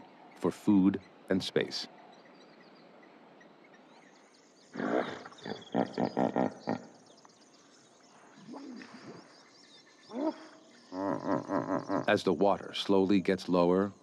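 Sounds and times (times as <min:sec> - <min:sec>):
birds chirping faintly: 0:00.0 - 0:14.0
hippopotamus grunting and honking: 0:04.7 - 0:07.0, 0:10.1 - 0:12.5.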